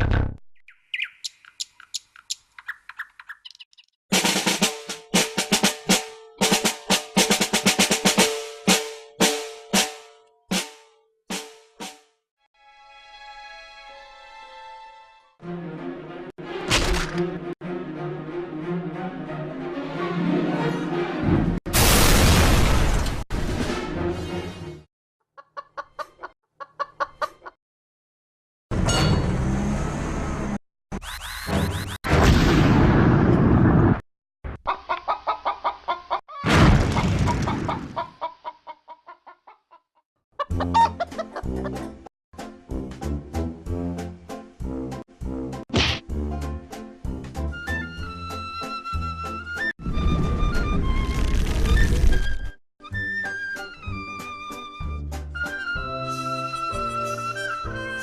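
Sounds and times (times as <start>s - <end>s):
drum kit playing fast: 4.1s - 9.9s
chicken clucking: 25.4s - 27.6s, 34.6s - 36.2s, 37.7s - 42.0s.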